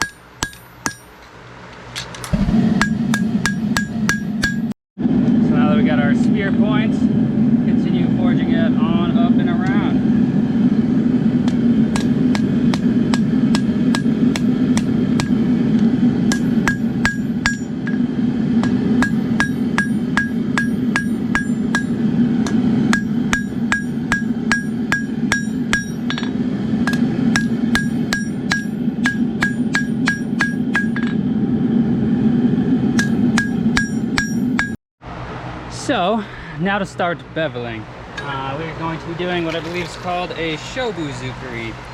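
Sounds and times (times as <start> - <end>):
hammer striking hot steel on anvil: 0.0 - 1.3, 2.0 - 4.8, 11.4 - 15.5, 16.2 - 31.2, 32.9 - 34.8.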